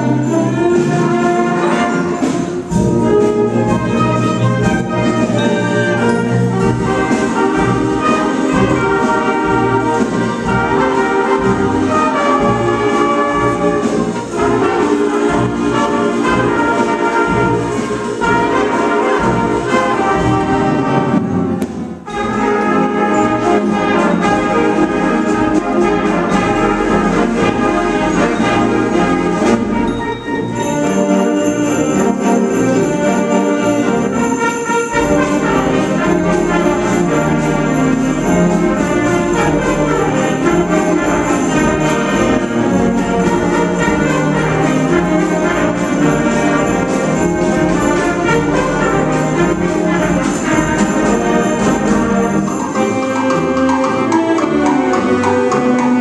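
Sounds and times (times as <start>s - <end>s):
big band brass playing: 0.0s - 56.0s
sleigh rattle shaking: 22.3s - 55.6s.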